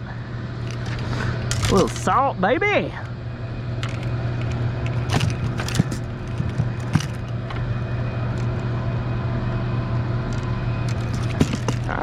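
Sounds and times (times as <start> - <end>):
electric motor humming: 3.0 - 12.0.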